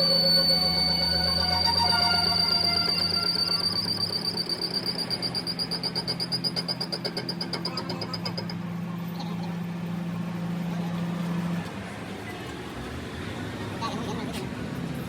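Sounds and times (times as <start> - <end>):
pulsing high whine: 0.0 - 11.8
machine low hum: 0.0 - 11.9.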